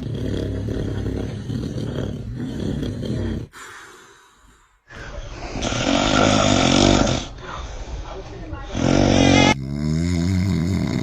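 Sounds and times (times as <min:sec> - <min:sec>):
man snoring: 0:00.0 - 0:04.2, 0:05.2 - 0:07.4, 0:08.7 - 0:11.0.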